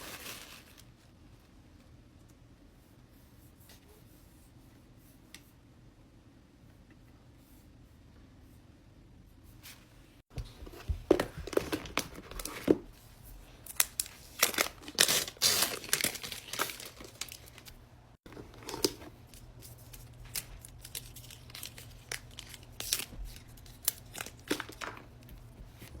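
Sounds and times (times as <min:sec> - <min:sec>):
packaging crinkling and tearing: 0:00.0 - 0:00.9, 0:11.1 - 0:12.8, 0:13.6 - 0:25.3.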